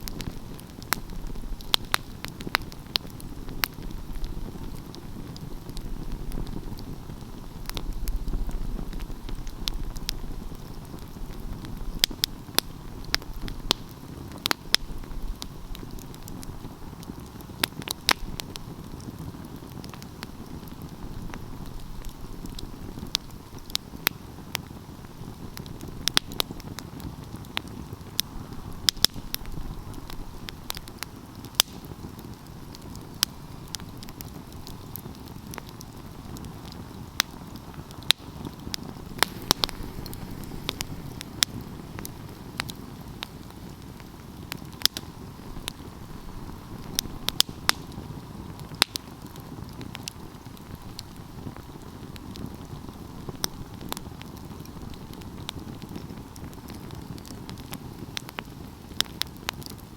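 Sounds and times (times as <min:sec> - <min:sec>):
flames rumbling: 0:00.0 - 0:59.9
wood crackling and popping: 0:00.0 - 0:59.9.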